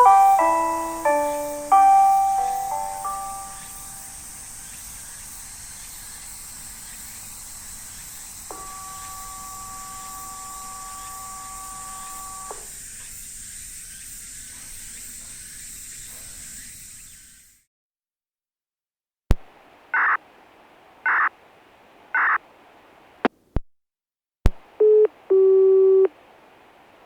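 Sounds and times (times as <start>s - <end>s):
electronic chord from loudspeakers: 0.0s - 4.4s, 8.5s - 12.6s
steady high hiss: 0.0s - 17.4s.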